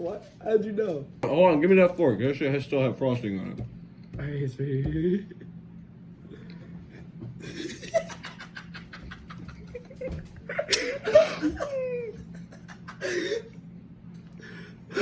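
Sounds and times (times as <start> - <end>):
man laughing: 6.9 - 13.5.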